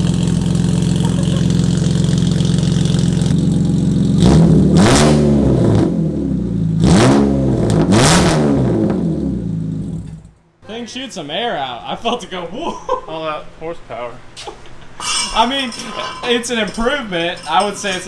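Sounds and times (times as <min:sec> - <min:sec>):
car engine idling and revving: 0:00.0 - 0:10.1.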